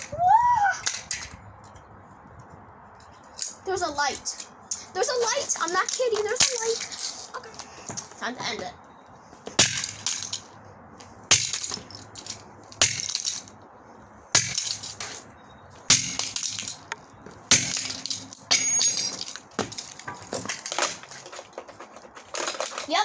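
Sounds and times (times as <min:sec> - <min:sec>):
phone smashed with heavy blows: 0:09.6 - 0:10.5, 0:11.3 - 0:13.5, 0:14.4 - 0:15.0, 0:15.9 - 0:16.9, 0:17.5 - 0:21.1
plastic cracking and rattling: 0:16.0 - 0:23.0.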